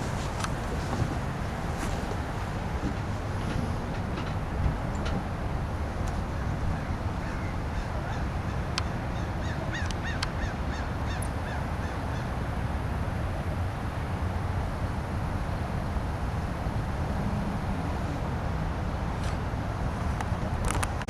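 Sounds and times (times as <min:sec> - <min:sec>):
steady low rumble: 0:00.0 - 0:21.0
birds harsh calls: 0:06.3 - 0:12.4.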